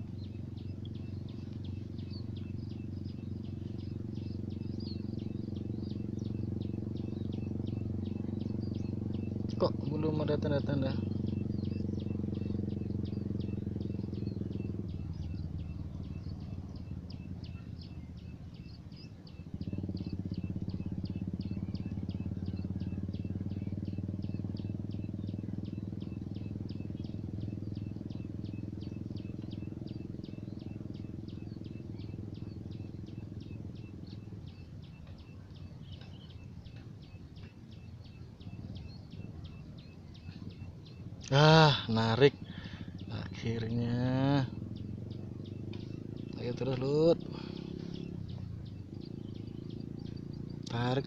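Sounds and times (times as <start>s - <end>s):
small engine running: 0.0s - 51.0s.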